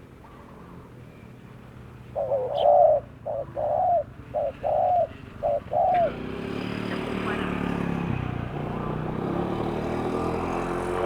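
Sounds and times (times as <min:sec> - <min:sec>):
dove cooing: 0:02.1 - 0:06.2.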